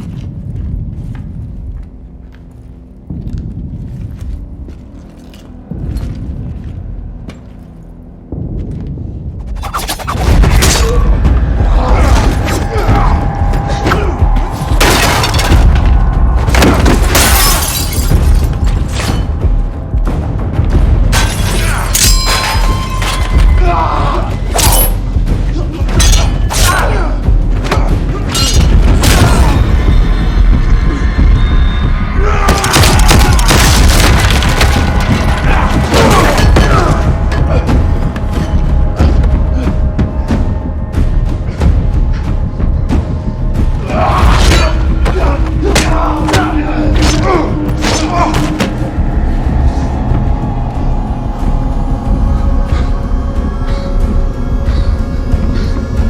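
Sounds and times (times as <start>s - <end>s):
dramatic orchestral score: 0.0s - 56.0s
heavy low booms: 27.0s - 56.0s.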